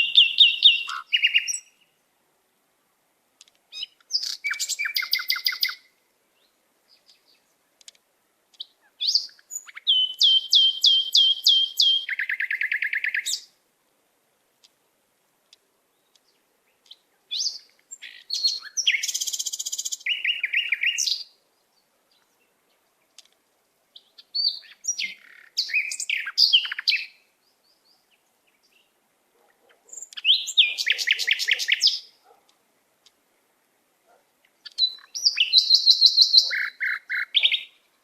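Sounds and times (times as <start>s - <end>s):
bird chirping and trilling: 0.0s - 1.9s, 3.7s - 5.9s, 8.6s - 13.5s, 16.8s - 21.3s, 23.9s - 28.9s, 29.8s - 32.3s, 34.5s - 37.9s.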